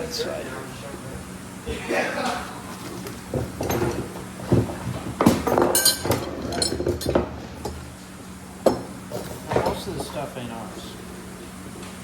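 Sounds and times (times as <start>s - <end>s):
metal parts and tools clanking: 5.4s - 7.2s.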